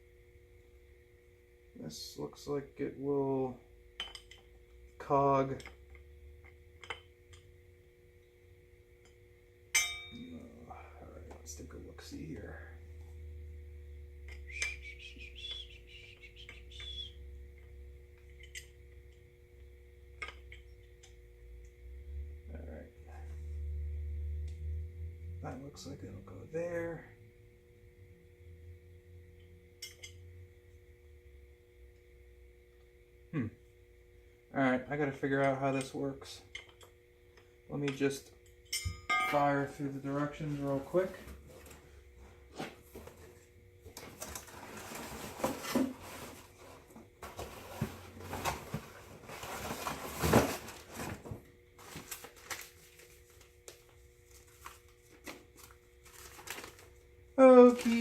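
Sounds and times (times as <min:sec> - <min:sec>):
faint steady hum: 0:00.0 - 0:58.0
paper rustling: 0:44.0 - 0:57.0.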